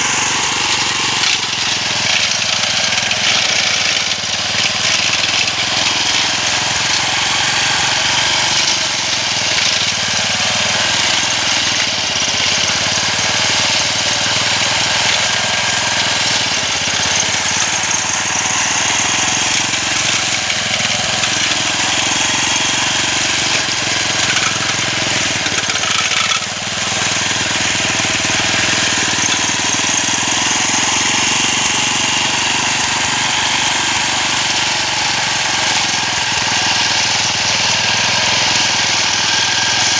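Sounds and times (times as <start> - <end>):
grass cutter engine running: 0.0 - 39.9.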